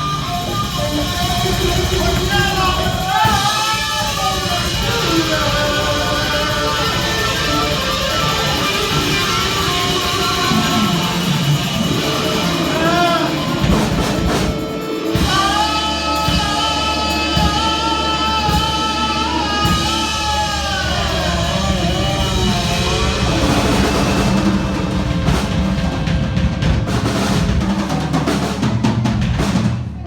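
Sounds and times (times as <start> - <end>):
electric guitars: 0.0 - 29.7
bass guitar: 0.0 - 30.0
drums: 0.0 - 30.0.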